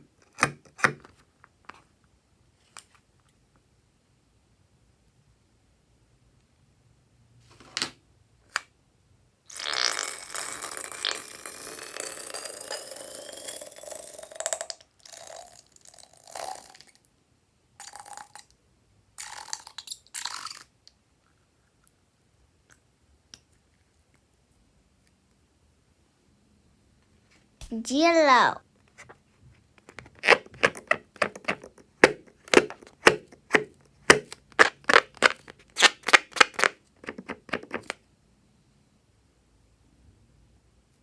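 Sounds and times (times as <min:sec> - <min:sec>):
slime squelching: 0:30.0 - 0:38.0.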